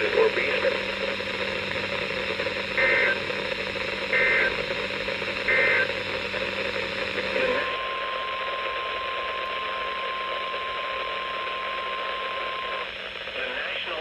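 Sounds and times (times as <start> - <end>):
radio static hiss: 0.0 - 14.0
steady high alarm tone: 2.8 - 3.3, 4.1 - 4.7, 5.4 - 6.0, 7.4 - 12.9.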